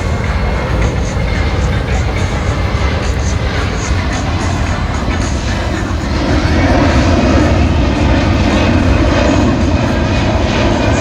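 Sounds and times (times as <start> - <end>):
loud jet engine noise: 0.0 - 11.0.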